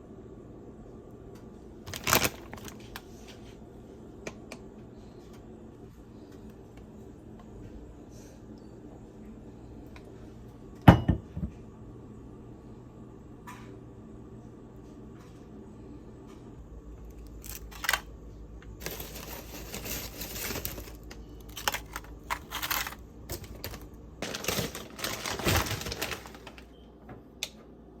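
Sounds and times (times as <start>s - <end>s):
packaging rustling: 1.9s - 3.0s, 17.2s - 18.0s, 18.8s - 26.7s
food containers clicking and tapping: 18.8s - 26.6s.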